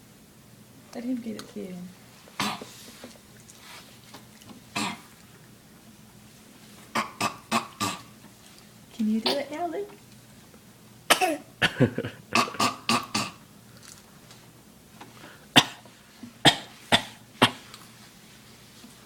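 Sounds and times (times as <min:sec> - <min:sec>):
toddler coughing: 0:02.4 - 0:02.7, 0:04.8 - 0:05.0, 0:07.0 - 0:08.1, 0:09.2 - 0:09.6, 0:11.1 - 0:13.4.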